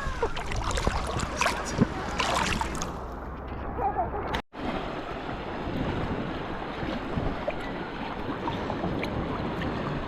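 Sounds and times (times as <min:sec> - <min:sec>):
wind on microphone: 0:00.0 - 0:03.0, 0:04.6 - 0:10.0
sea water rushing: 0:00.0 - 0:03.2, 0:04.5 - 0:10.0.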